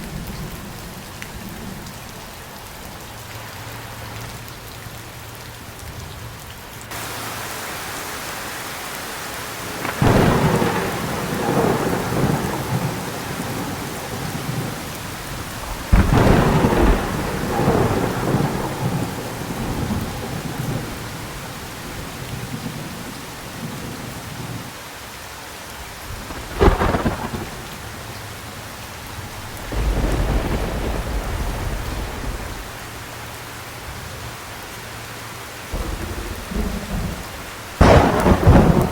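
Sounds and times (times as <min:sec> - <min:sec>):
heavy rain falling: 0:00.0 - 0:38.9
thunder cracking and rumbling: 0:09.4 - 0:24.7, 0:26.1 - 0:33.1, 0:35.7 - 0:38.9.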